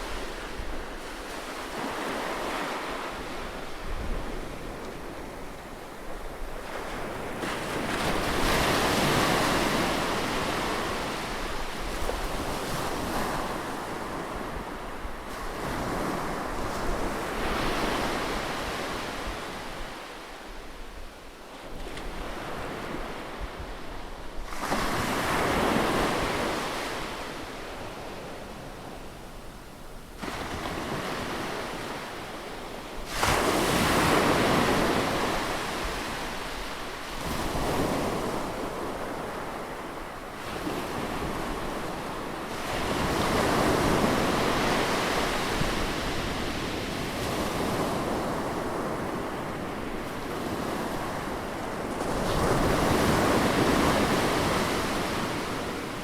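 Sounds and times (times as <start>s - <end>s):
waves breaking on shore: 30.2s - 56.0s.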